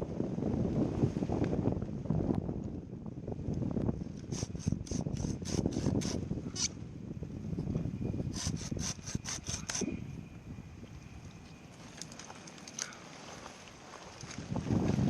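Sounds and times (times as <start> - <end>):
hand saw cutting palm fronds: 4.2 - 6.7, 8.3 - 9.9.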